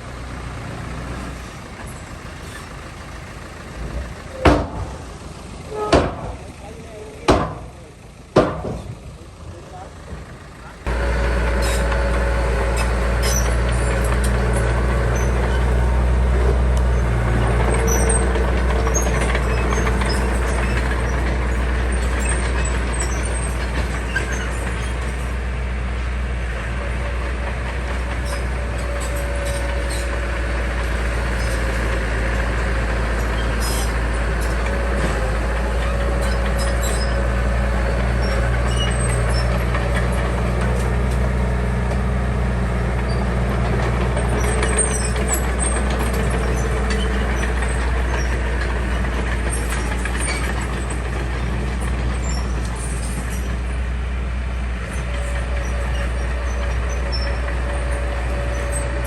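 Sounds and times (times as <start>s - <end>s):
heavy diesel engine running: 0.0s - 59.0s.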